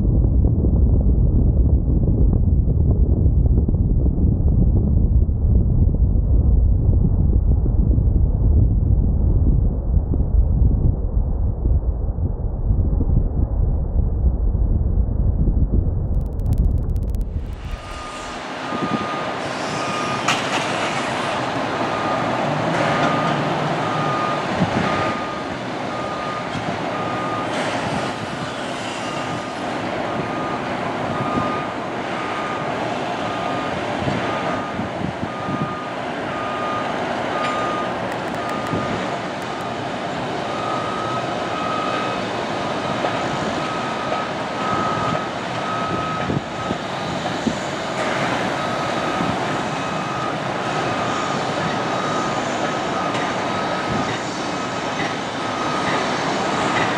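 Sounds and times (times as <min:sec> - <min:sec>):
traffic and vehicle noise: 0:16.1 - 0:56.9
reversing alarm beeping: 0:16.2 - 0:47.2, 0:47.9 - 0:56.9.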